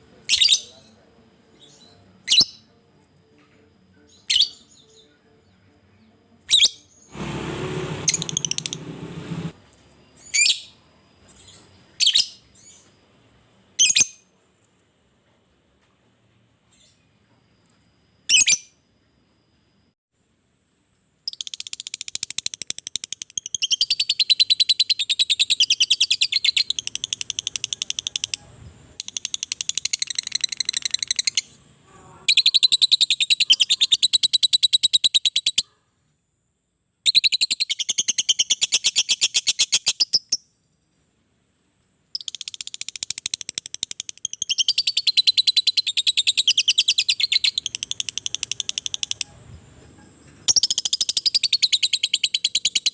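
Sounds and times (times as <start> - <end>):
lovebird chattering song: 42.2 - 49.4
sharp bird chirp: 42.2 - 49.4, 50.5 - 52.9.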